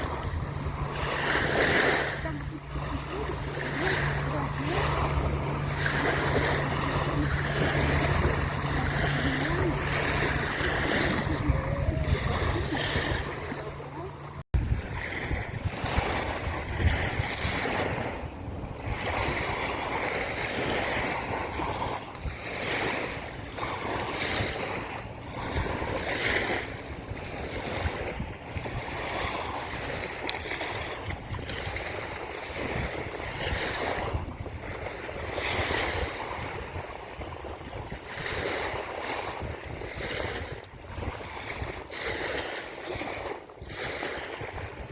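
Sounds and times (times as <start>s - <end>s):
low steady hum: 0.0s - 28.8s
waves washing onto beach: 0.0s - 44.9s
wind on microphone: 0.0s - 44.9s.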